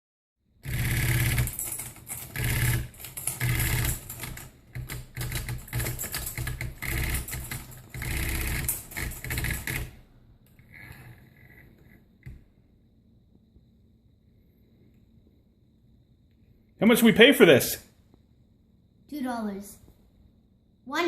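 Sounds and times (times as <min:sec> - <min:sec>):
low mechanical hum: 0:00.6 - 0:16.8.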